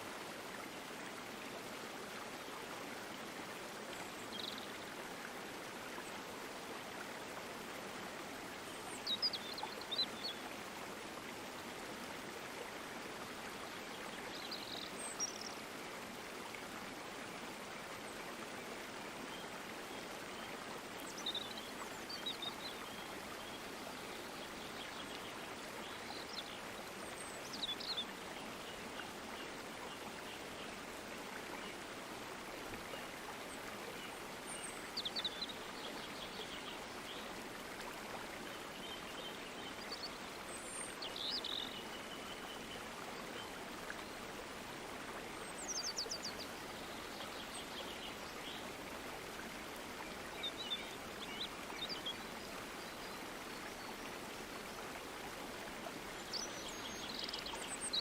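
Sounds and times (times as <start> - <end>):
stream water rushing: 0.0 - 58.0.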